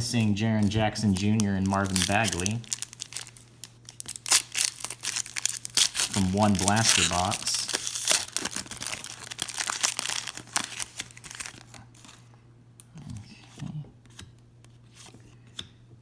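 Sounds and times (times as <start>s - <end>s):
cards clicking and rustling: 0.1s - 12.2s
plastic wrapper tearing and crinkling: 0.2s - 12.2s.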